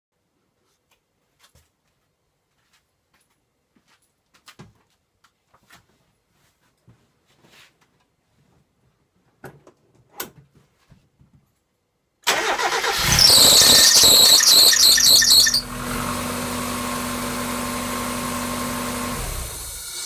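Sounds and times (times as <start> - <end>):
high-pitched engine squeal: 12.3 - 15.8
car engine cranking and idling: 12.3 - 20.0.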